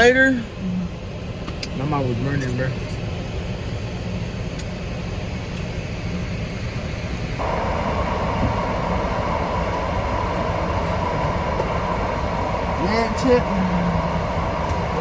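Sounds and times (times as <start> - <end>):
low rumbling noise: 0.0 - 15.0
higher hum: 6.0 - 15.0.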